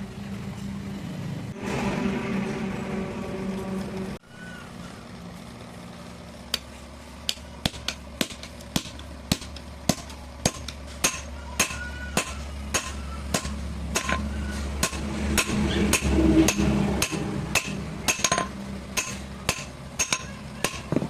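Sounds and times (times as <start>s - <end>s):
low steady hum: 0.0s - 21.0s
hammer striking metal anvil: 7.3s - 21.0s.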